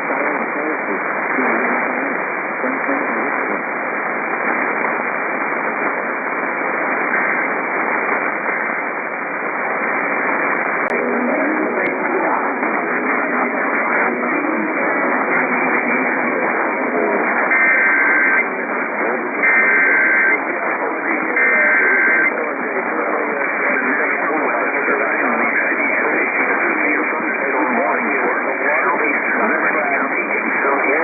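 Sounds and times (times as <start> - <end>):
faint voice: 0.0 - 3.8, 10.9 - 31.0
radio static hiss: 0.0 - 31.0.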